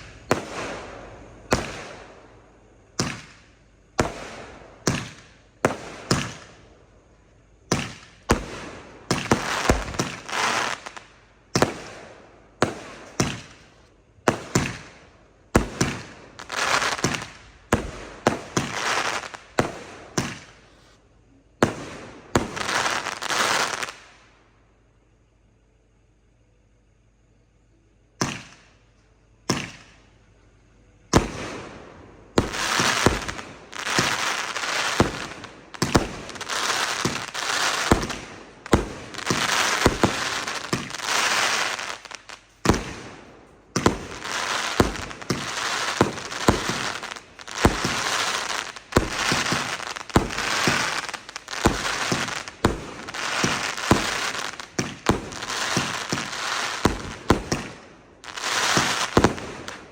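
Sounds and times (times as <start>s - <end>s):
firework shots: 0.0s - 6.7s, 7.6s - 21.0s, 21.6s - 24.2s, 28.2s - 28.8s, 29.4s - 30.1s, 31.1s - 59.9s
crackling firework bursts: 0.0s - 6.8s, 7.5s - 24.4s, 31.0s - 59.9s.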